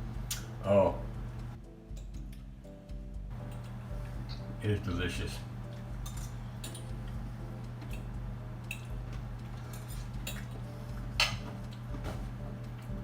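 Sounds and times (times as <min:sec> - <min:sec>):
cutlery clinking on a plate: 0:09.7 - 0:10.6, 0:11.2 - 0:11.6.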